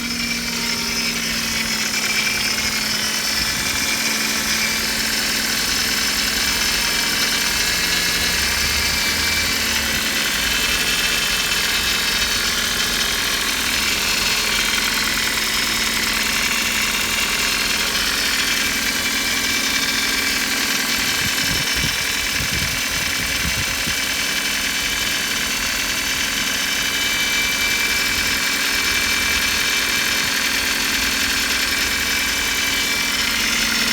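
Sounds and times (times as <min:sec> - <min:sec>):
metallic whistling squeak: 0:00.0 - 0:22.5
car engine idling: 0:00.0 - 0:33.9.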